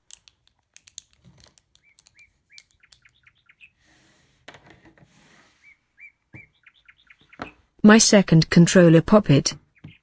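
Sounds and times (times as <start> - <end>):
plastic links clicking: 0.0 - 3.2.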